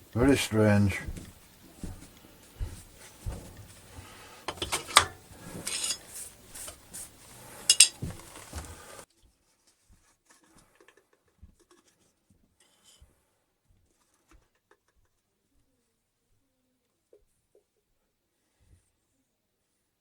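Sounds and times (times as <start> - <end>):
small metal objects clinking: 4.6 - 6.2, 7.6 - 8.4.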